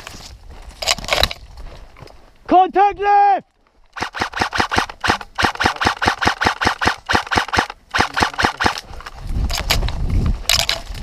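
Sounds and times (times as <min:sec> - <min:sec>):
airsoft rifle rapid fire: 0:04.0 - 0:08.8
sharp cracks: 0:04.0 - 0:08.9.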